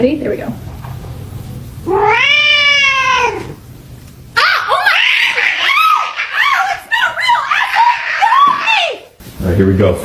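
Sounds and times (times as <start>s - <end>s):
cat meowing: 1.8s - 3.6s, 4.4s - 9.0s.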